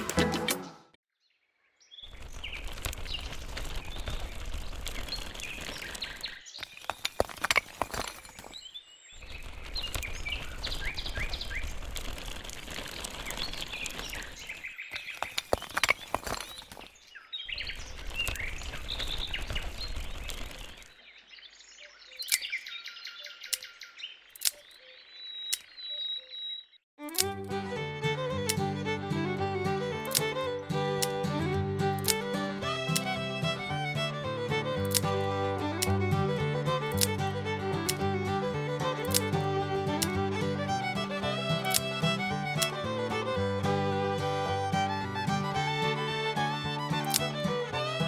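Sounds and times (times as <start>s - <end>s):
outdoor background noise: 1.8s - 48.0s
small birds chirping: 13.3s - 26.8s
sharp clicks: 27.1s - 27.5s, 29.6s - 43.4s.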